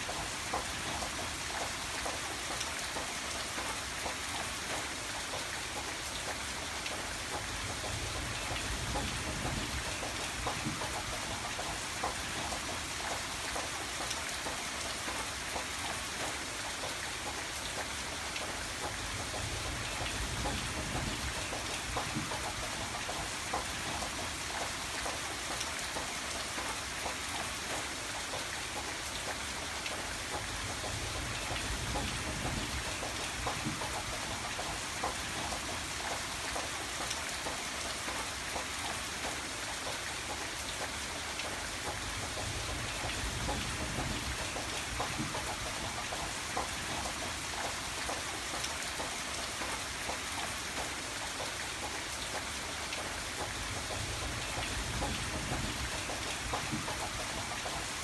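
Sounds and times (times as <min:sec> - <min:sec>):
rain falling: 0:00.0 - 0:58.0
raindrops striking a surface: 0:00.0 - 0:58.0.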